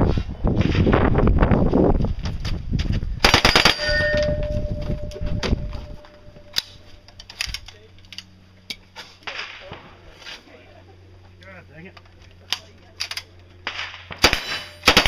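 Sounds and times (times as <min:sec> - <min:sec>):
submachine gun burst: 0:03.2 - 0:03.9, 0:13.7 - 0:15.0
steel target ringing clang: 0:03.4 - 0:06.8, 0:14.3 - 0:15.0.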